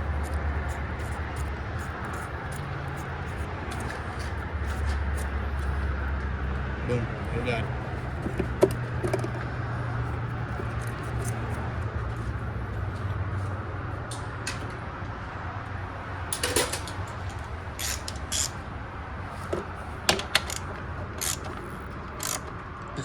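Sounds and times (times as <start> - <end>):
steady low hum: 0.0 - 14.1
metallic clicks of hand tools: 17.8 - 18.6, 20.1 - 22.5.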